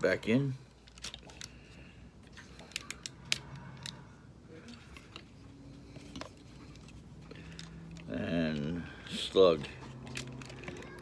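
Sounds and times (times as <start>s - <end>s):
plastic parts clicking and snapping: 0.8s - 4.0s, 6.0s - 11.0s.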